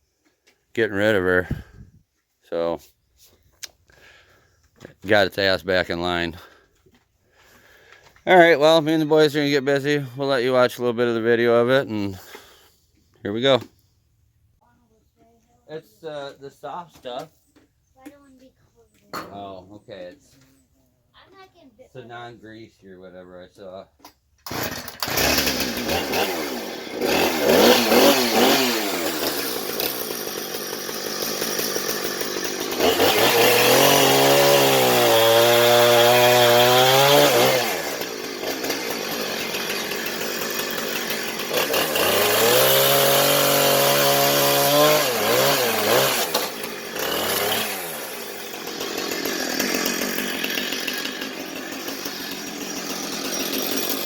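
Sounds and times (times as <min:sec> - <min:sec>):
chainsaw running: 0:00.8 - 0:01.8, 0:03.9 - 0:06.7, 0:07.3 - 0:12.7, 0:24.4 - 0:54.0.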